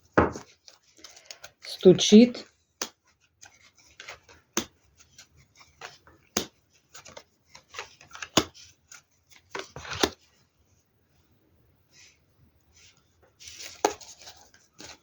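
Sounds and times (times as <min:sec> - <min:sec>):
cards clicking and slapping on table: 0:02.8 - 0:03.0, 0:04.0 - 0:04.8, 0:05.8 - 0:08.6.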